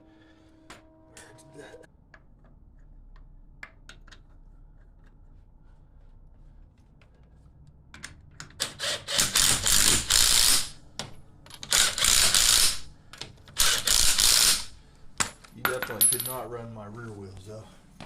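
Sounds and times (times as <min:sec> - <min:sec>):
wrench clicking: 0:08.6 - 0:10.8, 0:11.6 - 0:12.9, 0:13.6 - 0:14.7.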